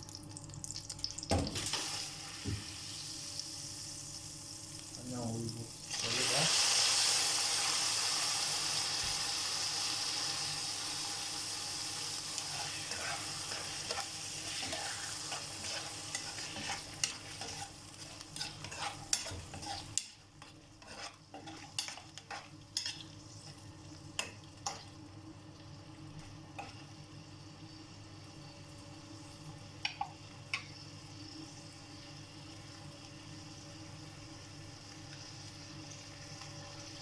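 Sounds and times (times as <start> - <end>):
liver sizzling in a frying pan: 0.0 - 37.0
utensil tapping and scraping a pan: 12.4 - 23.1.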